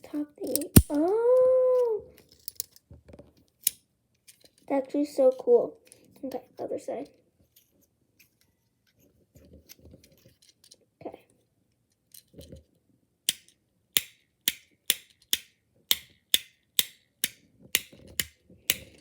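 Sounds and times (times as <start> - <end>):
plastic fidget pad clicks: 13.3 - 19.0.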